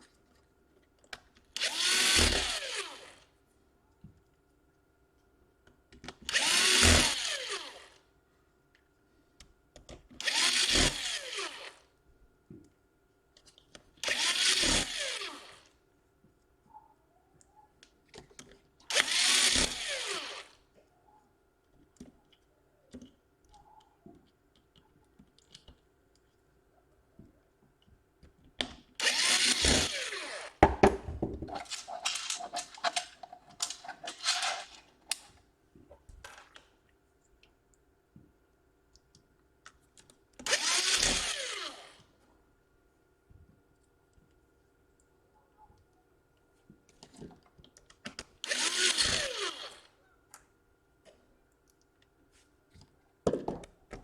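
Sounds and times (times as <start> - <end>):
electric screwdriver spinning: 1.6 - 3.2, 6.3 - 7.9, 10.2 - 11.8, 14.0 - 15.6, 18.9 - 20.6, 29.0 - 30.9, 31.6 - 34.8, 40.4 - 42.0, 48.4 - 49.9.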